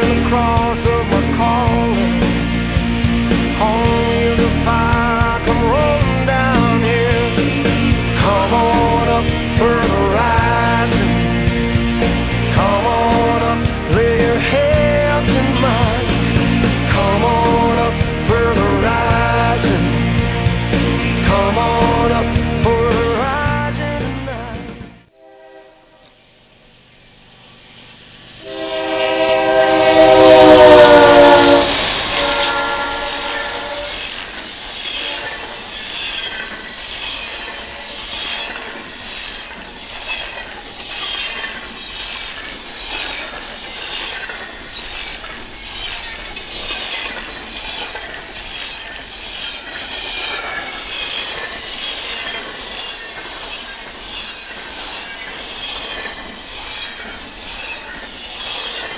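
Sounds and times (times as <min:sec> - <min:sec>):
freight cars rumbling by: 0:00.0 - 0:25.1
locomotive air horn: 0:25.1 - 0:26.2, 0:28.4 - 0:34.0
wheel clicks over rail joints: 0:33.7 - 0:58.9.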